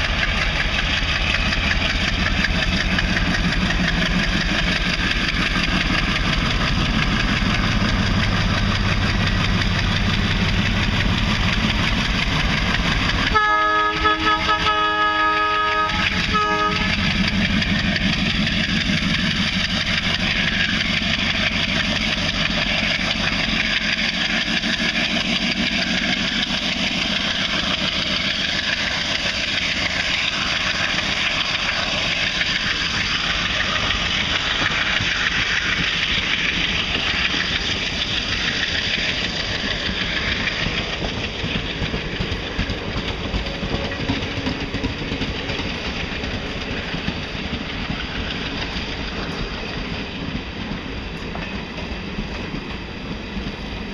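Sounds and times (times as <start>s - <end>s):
diesel locomotive engine throbbing: 0.0s - 53.9s
locomotive horn blast: 13.3s - 17.0s.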